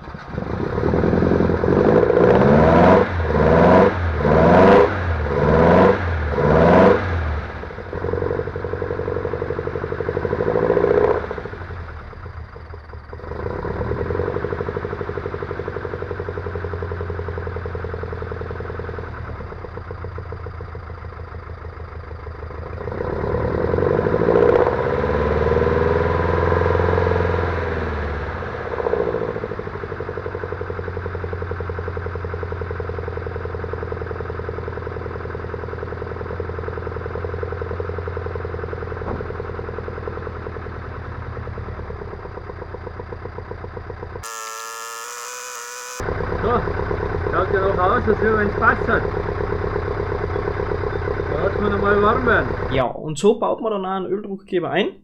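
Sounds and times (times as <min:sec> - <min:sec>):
car engine revving and idling: 0:00.0 - 0:44.2, 0:45.0 - 0:52.8.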